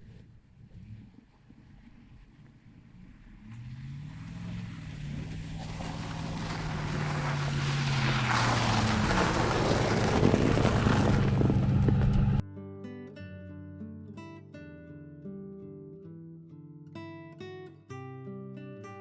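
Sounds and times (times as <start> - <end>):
vehicle engine running: 0.0 - 12.4.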